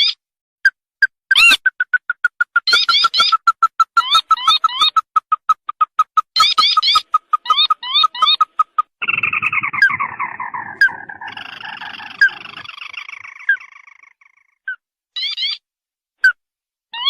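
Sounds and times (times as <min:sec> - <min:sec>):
bird trilling: 0:01.3 - 0:15.6
bird rising notes: 0:01.4 - 0:14.4.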